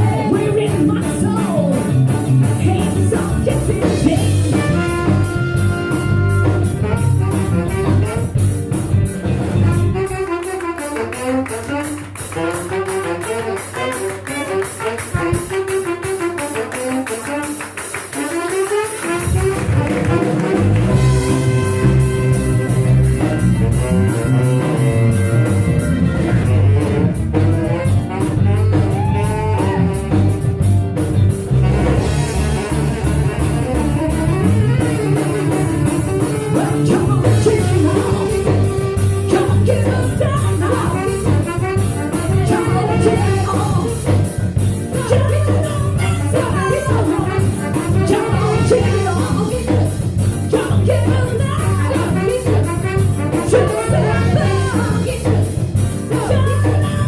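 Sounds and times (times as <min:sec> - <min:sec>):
person singing: 0:00.0 - 0:04.7, 0:35.1 - 0:44.2, 0:44.9 - 0:49.9, 0:50.5 - 0:57.0
live band playing: 0:00.0 - 0:57.0.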